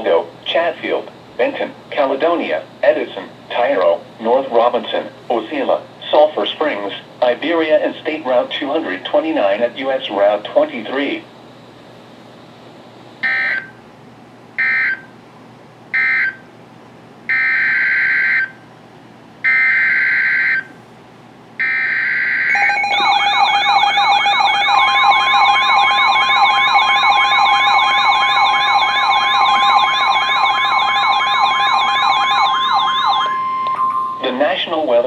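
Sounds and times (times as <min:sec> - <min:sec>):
steady single-pitch warning tone: 0:12.4 - 0:13.8, 0:14.6 - 0:15.2, 0:15.9 - 0:16.5, 0:17.3 - 0:18.7, 0:19.4 - 0:20.8, 0:21.6 - 0:35.0
warbling siren-like alarm tones: 0:17.3 - 0:18.6, 0:19.5 - 0:20.7, 0:21.6 - 0:34.6.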